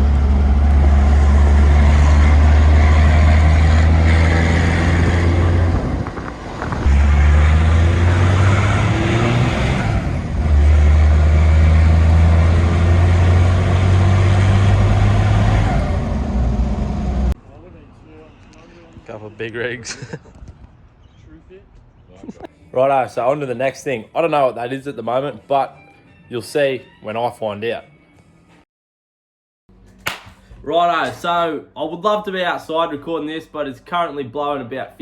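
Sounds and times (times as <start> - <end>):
vehicle engine drone: 0.0 - 17.6
road noise: 0.0 - 22.5.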